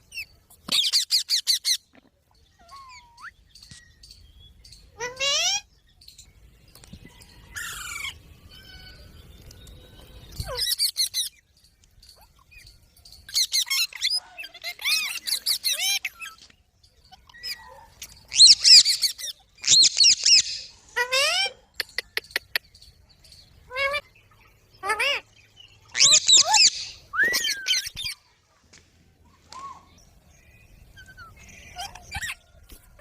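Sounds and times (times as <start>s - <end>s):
parrot squawking and screeching: 2.6s - 3.3s, 5.0s - 5.7s, 10.4s - 11.3s, 13.3s - 16.4s, 17.2s - 21.7s, 24.8s - 25.2s, 25.9s - 28.2s.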